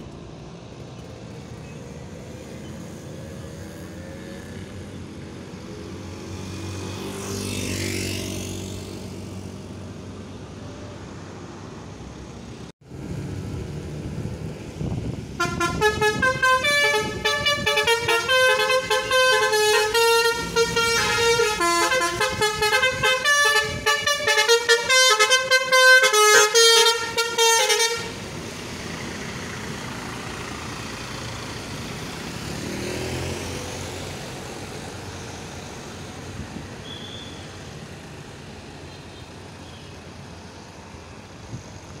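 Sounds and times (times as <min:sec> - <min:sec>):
vehicles passing: 0:00.0 - 0:42.0
musical vehicle horn melody: 0:15.4 - 0:28.2.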